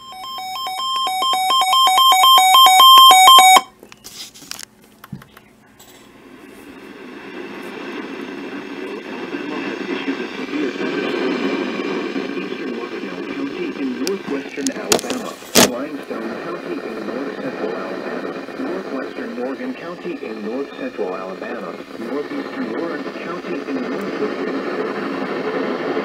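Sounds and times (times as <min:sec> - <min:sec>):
low noisy rumble: 0:05.4 - 0:26.0.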